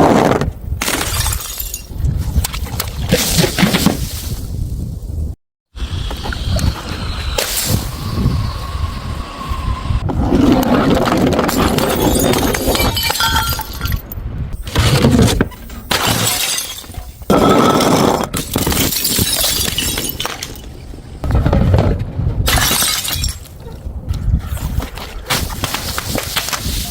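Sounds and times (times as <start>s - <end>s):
glass bottles smashing: 0.9s - 2.0s, 11.5s - 14.1s, 15.7s - 20.7s, 22.5s - 23.6s
glass shards tinkling: 11.6s - 14.1s, 18.5s - 20.7s.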